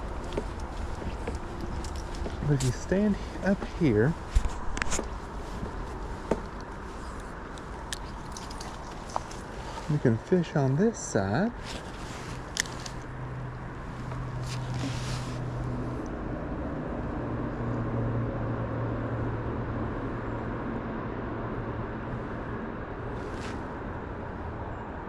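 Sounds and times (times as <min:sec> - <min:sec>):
outdoor background hiss: 0:00.0 - 0:16.0
vehicle engine and tyre hum: 0:00.0 - 0:25.0.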